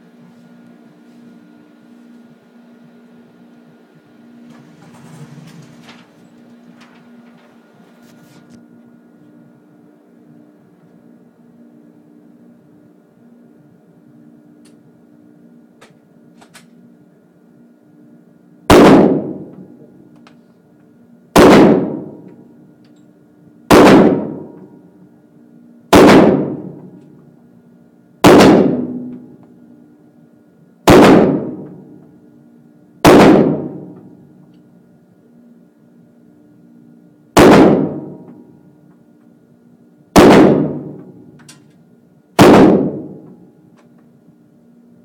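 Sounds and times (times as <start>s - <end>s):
pistol shots echoing indoors: 18.7s - 19.7s, 21.4s - 22.4s, 23.7s - 24.8s, 25.9s - 27.0s, 28.2s - 29.3s, 30.8s - 32.0s, 33.0s - 34.1s, 37.4s - 38.4s, 40.2s - 41.5s, 42.4s - 43.4s.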